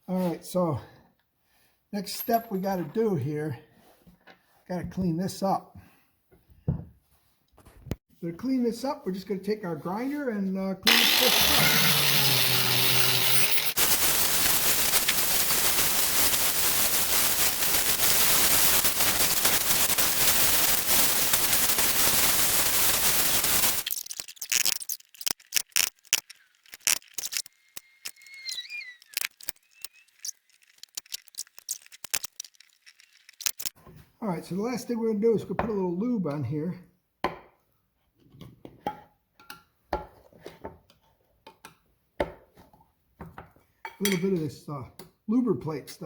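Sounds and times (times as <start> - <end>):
grinder grinding metal: 10.9 - 33.7.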